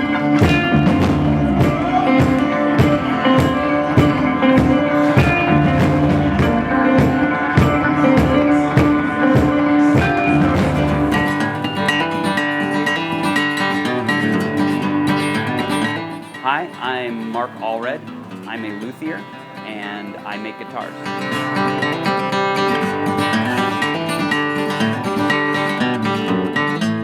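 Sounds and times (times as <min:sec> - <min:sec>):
stomped kick drum beat: 0:00.0 - 0:11.8
guitar strumming: 0:00.0 - 0:27.0.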